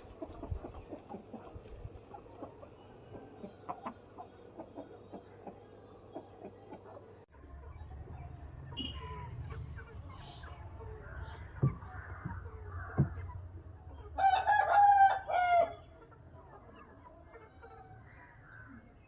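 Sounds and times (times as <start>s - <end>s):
chickens clucking softly: 0.0s - 8.3s
rooster crowing: 14.2s - 15.8s.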